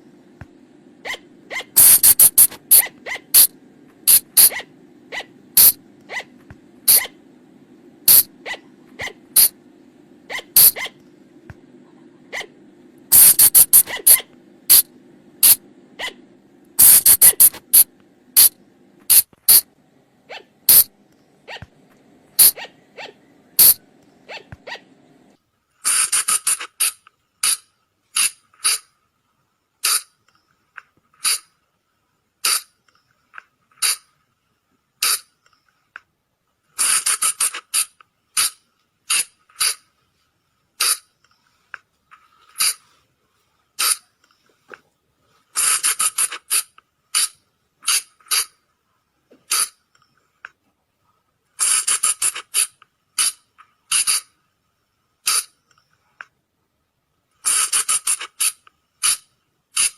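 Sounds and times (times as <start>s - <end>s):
low steady hum: 0.0s - 25.8s
animal squeaking calls: 1.0s - 3.5s, 4.1s - 7.2s, 8.1s - 9.5s, 10.3s - 11.0s, 12.3s - 12.5s, 13.2s - 14.8s, 15.4s - 16.2s, 20.3s - 20.9s, 22.4s - 24.9s.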